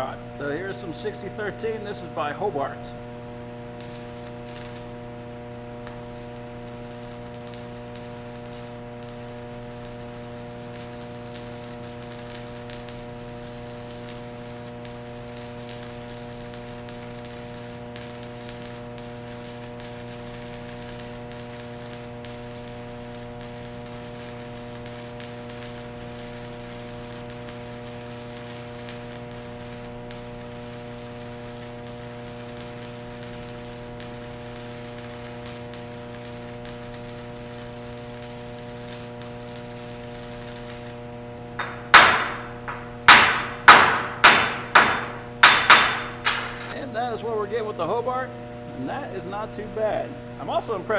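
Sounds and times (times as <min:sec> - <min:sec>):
welder humming and crackling: 0:00.0 - 0:50.9
chipping hammer knocking on metal: 0:41.6 - 0:46.8.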